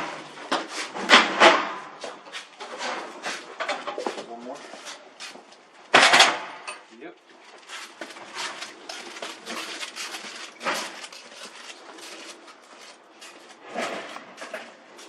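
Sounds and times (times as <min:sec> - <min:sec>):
water heater scuffing and knocking: 0:01.9 - 0:05.6, 0:07.5 - 0:15.0.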